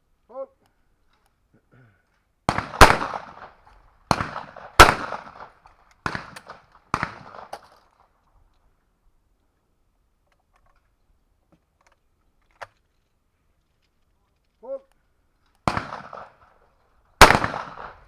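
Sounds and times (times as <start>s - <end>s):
shotgun shots: 2.5s - 7.6s, 15.6s - 16.4s, 17.2s - 18.0s.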